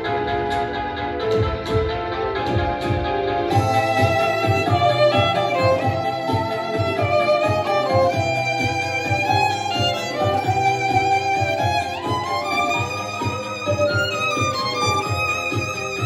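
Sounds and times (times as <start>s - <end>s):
beat and bass: 0.0s - 16.0s
violin melody: 3.5s - 16.0s.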